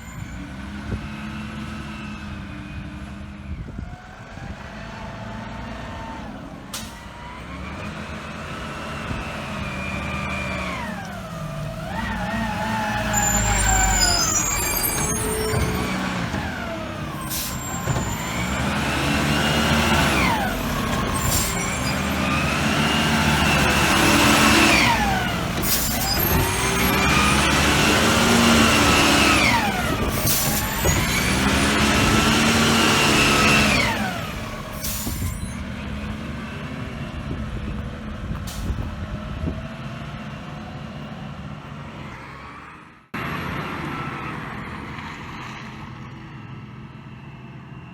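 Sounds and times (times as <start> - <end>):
garbage truck squeal: 0.0 - 0.8, 9.4 - 36.1
truck engine rumble: 0.0 - 47.9.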